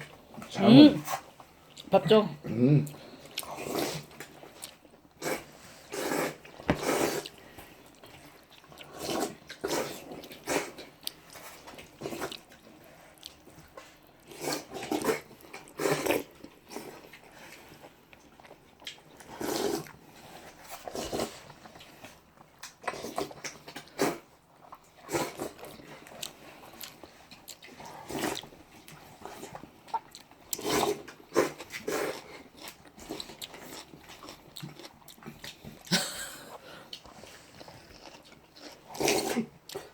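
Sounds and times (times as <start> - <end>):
person chewing and biting noisily: 2.8 - 39.9.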